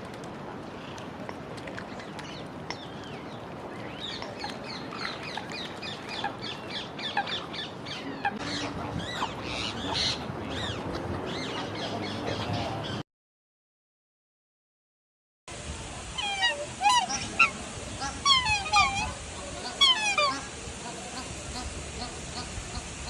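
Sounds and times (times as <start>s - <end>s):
birds chirping: 1.9s - 13.0s
steady hiss: 15.5s - 23.0s.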